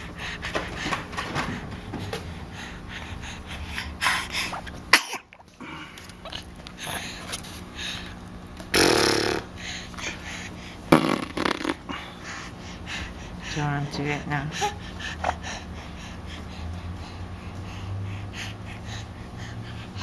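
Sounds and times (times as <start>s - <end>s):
baby spluttering: 8.7s - 9.5s, 10.9s - 12.1s.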